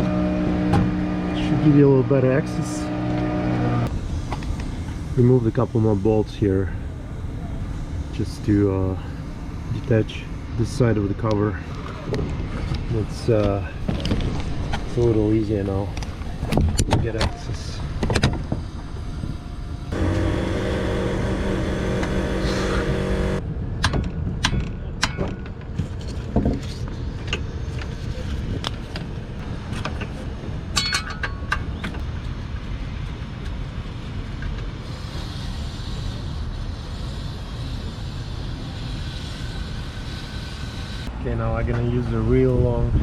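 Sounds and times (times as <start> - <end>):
low background rumble: 0.0 - 23.8
small motor humming: 19.9 - 23.4.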